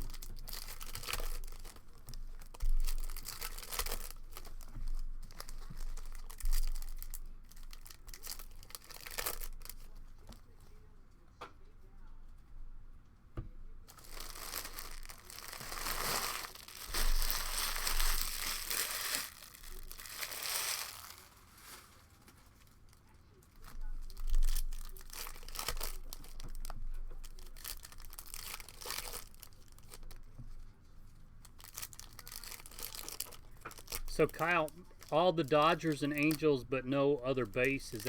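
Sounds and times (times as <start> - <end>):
card packaging tearing and crinkling: 0.0 - 9.8, 13.9 - 22.0, 24.2 - 30.2, 31.6 - 38.0.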